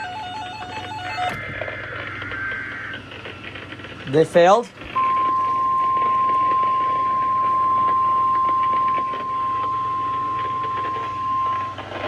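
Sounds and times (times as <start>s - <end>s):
loud high warning beep: 5.0s - 12.0s.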